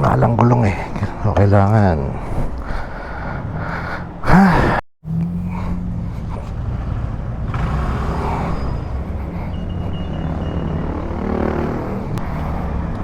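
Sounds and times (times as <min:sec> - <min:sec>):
wind and road noise: 0:00.0 - 0:13.0
loud voice-like groan: 0:04.2 - 0:04.8
motorcycle engine running: 0:05.1 - 0:13.0.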